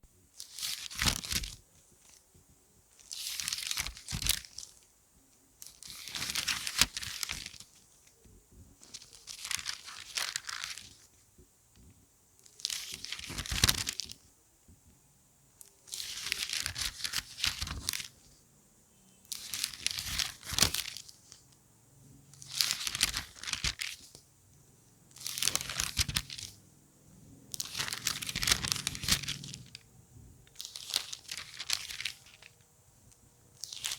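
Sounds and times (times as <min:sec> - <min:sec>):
book pages turning: 0:03.0 - 0:04.7, 0:05.6 - 0:07.8, 0:08.8 - 0:11.1, 0:12.4 - 0:14.2, 0:15.9 - 0:18.2, 0:19.3 - 0:21.4, 0:22.4 - 0:24.2, 0:25.1 - 0:26.6, 0:27.5 - 0:29.8, 0:30.6 - 0:32.6, 0:33.6 - 0:33.9.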